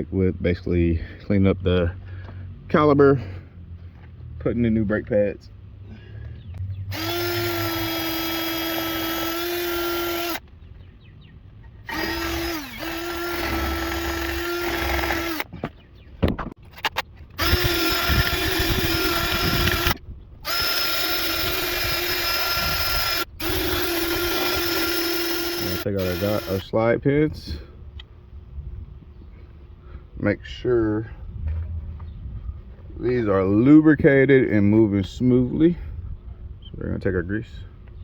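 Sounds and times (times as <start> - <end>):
drill spinning a cleaning brush: 6.9 - 10.4, 11.9 - 15.4, 17.4 - 26.6.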